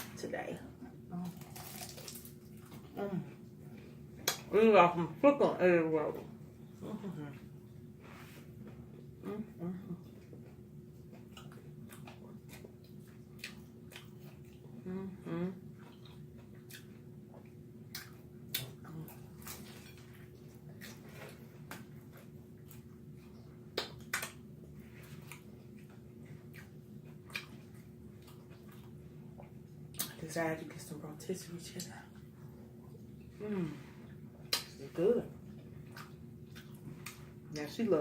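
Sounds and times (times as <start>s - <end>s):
chewing crunches and smacks: 1.3s - 2.9s, 10.0s - 14.8s, 15.7s - 30.2s, 35.4s - 37.5s.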